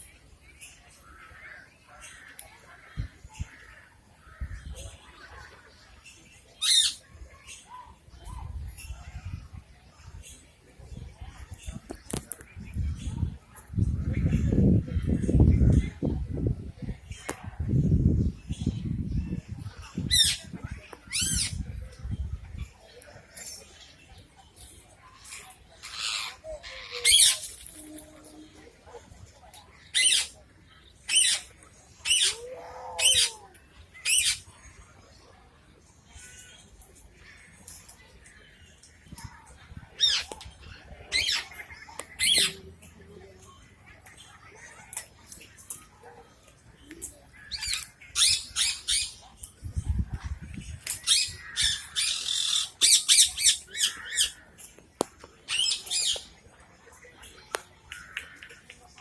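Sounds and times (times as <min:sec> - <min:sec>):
parrots squawking: 0:06.6 - 0:07.0, 0:21.1 - 0:21.6, 0:25.8 - 0:27.5, 0:29.9 - 0:30.4, 0:31.1 - 0:32.4, 0:33.0 - 0:33.4, 0:34.0 - 0:34.4, 0:42.2 - 0:42.6, 0:47.5 - 0:49.2, 0:51.0 - 0:54.4.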